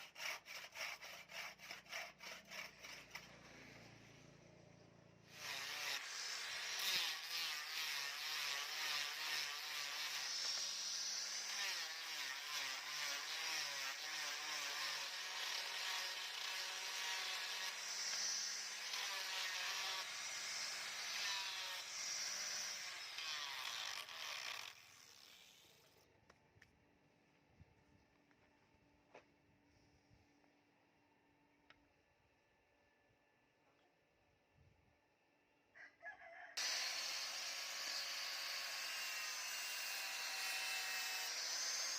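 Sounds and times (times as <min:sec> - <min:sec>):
electric power tool running: 0:36.6 - 0:41.9.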